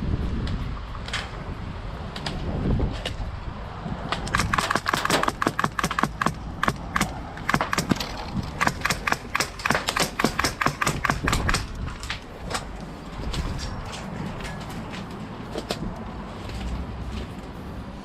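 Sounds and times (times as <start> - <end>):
sharp clicks and cracks: 4.1 - 16.1.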